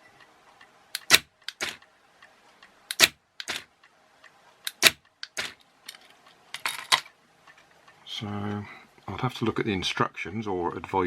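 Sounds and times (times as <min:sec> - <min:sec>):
door lock actuator clicking: 0:02.9 - 0:03.7.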